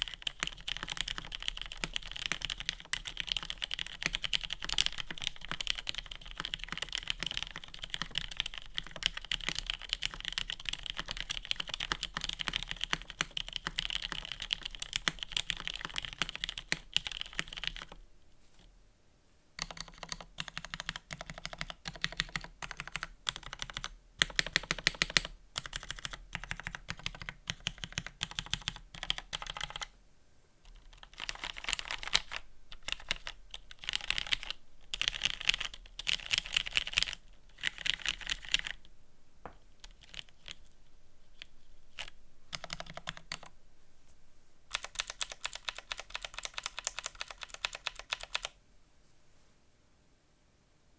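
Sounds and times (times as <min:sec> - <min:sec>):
mechanical keyboard typing: 0:00.0 - 0:18.0, 0:19.6 - 0:29.9, 0:30.7 - 0:38.8, 0:39.8 - 0:40.6, 0:41.4 - 0:43.5, 0:44.7 - 0:48.6.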